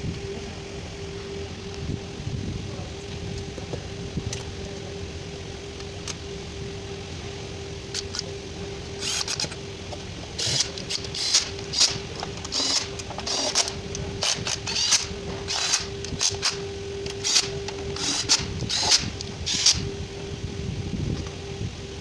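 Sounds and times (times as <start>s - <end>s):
steady hum: 0.0s - 22.0s
ratchet wrench clicking: 9.0s - 9.6s, 10.4s - 19.8s.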